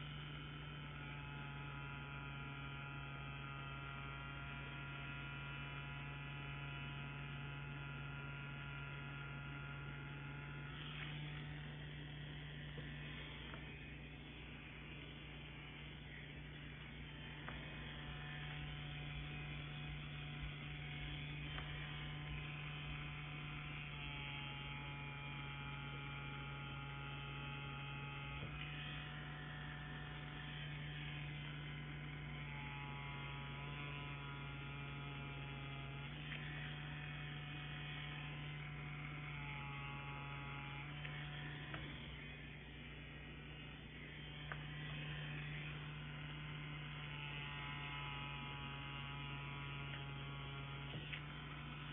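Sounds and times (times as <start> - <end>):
tattoo pen electric hum: 0.0 - 51.9.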